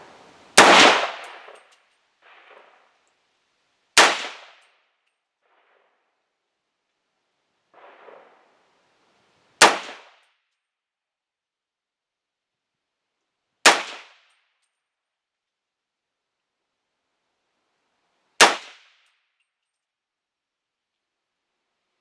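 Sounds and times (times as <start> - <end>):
rifle shots with echo: 0.6 - 1.6, 4.0 - 4.6, 9.6 - 10.2, 13.6 - 14.1.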